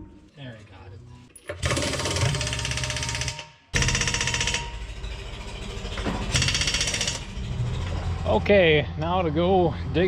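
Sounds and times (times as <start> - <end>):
impact wrench hammering: 1.6 - 5.2, 5.9 - 7.4.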